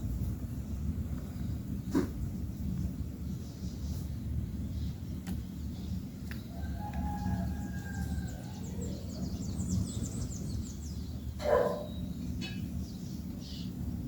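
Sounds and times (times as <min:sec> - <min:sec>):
low background rumble: 0:00.0 - 0:14.0
bird chirps: 0:04.7 - 0:13.8.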